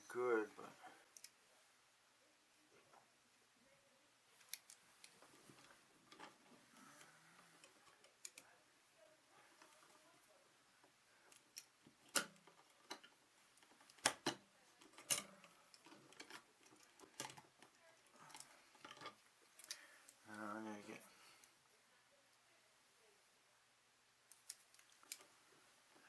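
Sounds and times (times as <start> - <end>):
wire strippers clicking and snipping: 4.4 - 8.5, 11.2 - 19.9, 24.3 - 25.3.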